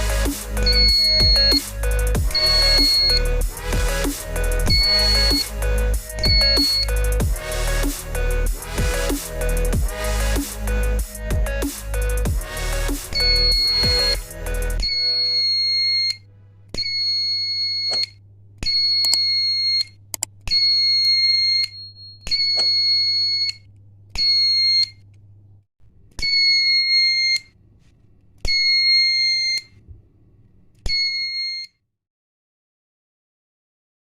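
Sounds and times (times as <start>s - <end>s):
buzzer beeping: 0.6s - 7.2s, 13.1s - 16.2s, 30.9s - 31.7s
click: 19.8s - 20.6s.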